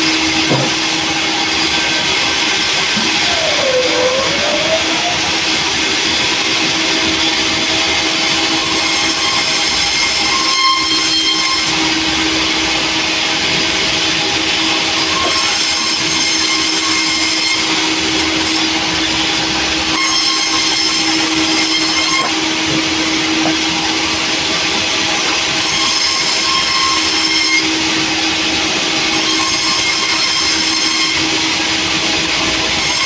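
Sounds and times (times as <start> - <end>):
high whine: 0.0 - 6.0
sawmill machine noise: 0.0 - 33.0.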